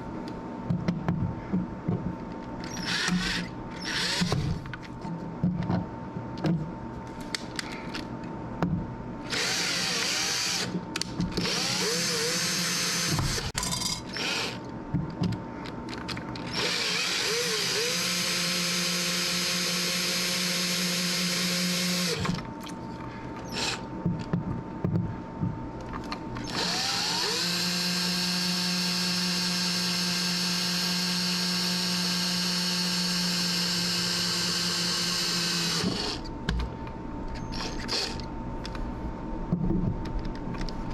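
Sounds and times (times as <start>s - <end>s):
electric drill whine: 2.6s - 4.6s, 9.3s - 14.6s, 16.5s - 22.4s, 23.4s - 23.9s, 26.4s - 36.3s, 37.4s - 38.3s.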